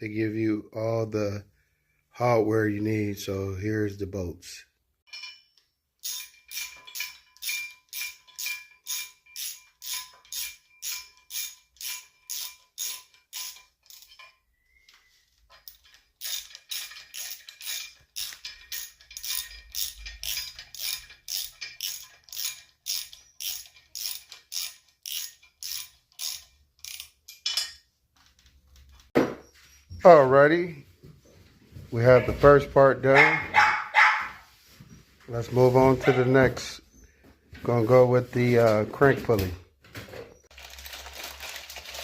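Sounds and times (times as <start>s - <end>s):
ratchet wrench clicking: 6.0s - 14.3s, 15.6s - 27.7s.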